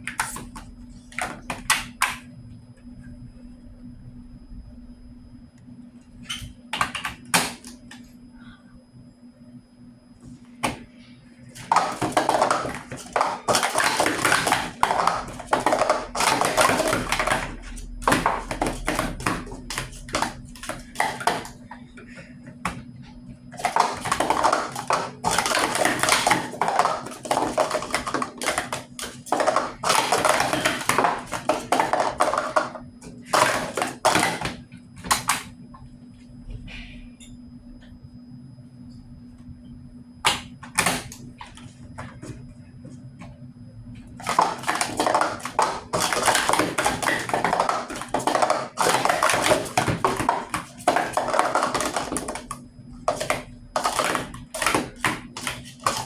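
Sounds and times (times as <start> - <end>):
small hard objects clattering: 11.6 - 21.6, 23.5 - 34.5, 44.2 - 56.0.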